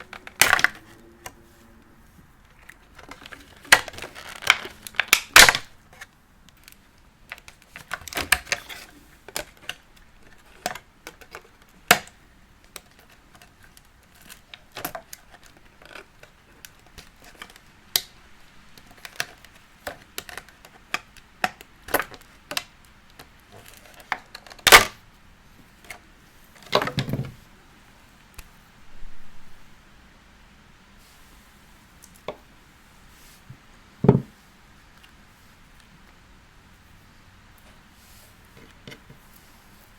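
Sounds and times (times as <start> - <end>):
packaging rustle: 2.5 - 12.0.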